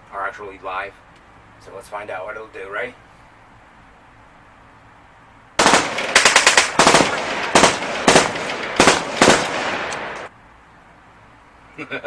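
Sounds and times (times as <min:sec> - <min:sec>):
automatic gunfire bursts: 0:05.6 - 0:10.3.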